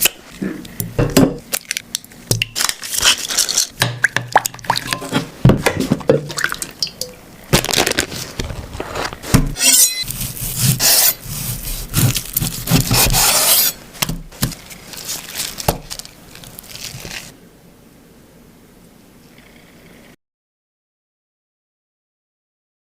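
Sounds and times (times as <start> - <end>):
handling knocks and scrapes: 7.6 - 17.3.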